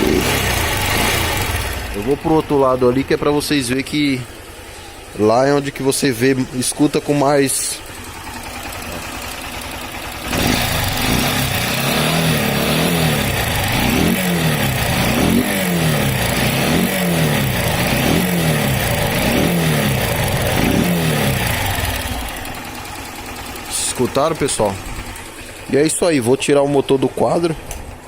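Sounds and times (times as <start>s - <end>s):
motorcycle engine revving: 0.0s - 26.6s
mechanical noise from engine: 0.0s - 28.0s.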